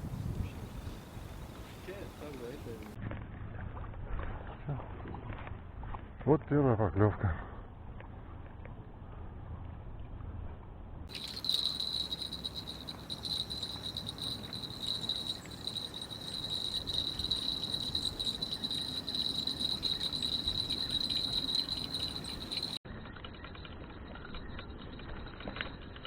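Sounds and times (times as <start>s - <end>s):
high-pitched insect-like trill: 11.1s - 26.0s.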